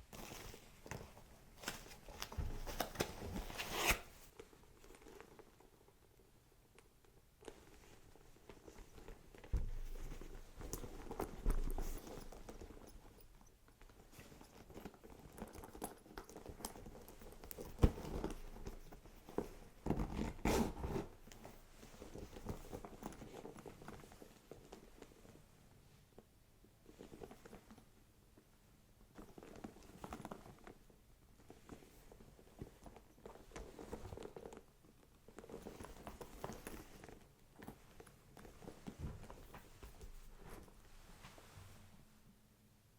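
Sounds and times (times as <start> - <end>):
handbag rustling: 35.4 - 41.6.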